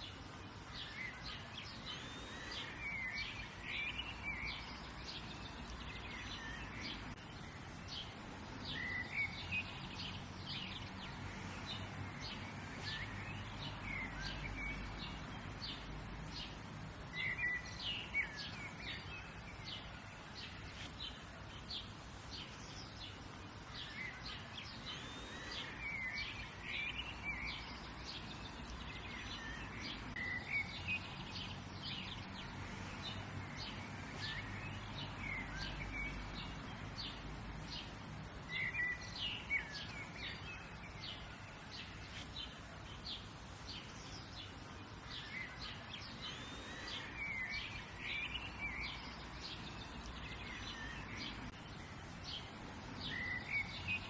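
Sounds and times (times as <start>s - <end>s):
birds chirping and trilling: 0.0s - 54.0s
outdoor background hiss: 0.0s - 54.0s.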